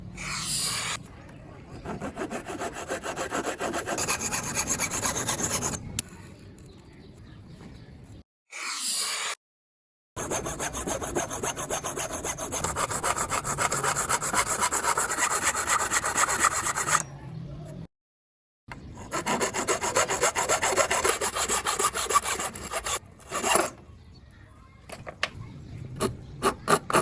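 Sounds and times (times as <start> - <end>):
handsaw cutting wood: 1.8 - 5.8, 10.2 - 17.0, 19.0 - 23.8.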